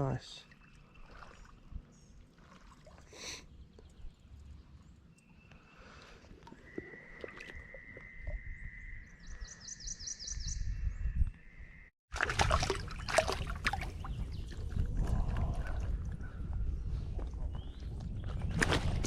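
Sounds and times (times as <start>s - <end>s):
water sloshing and splashing: 0.4s - 8.4s, 12.1s - 16.2s.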